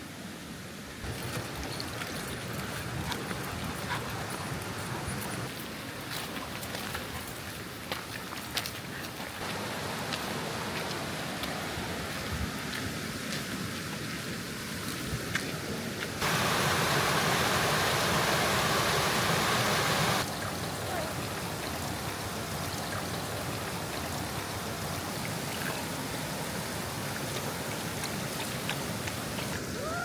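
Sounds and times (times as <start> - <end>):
mountain stream rushing: 9.3 - 30.0.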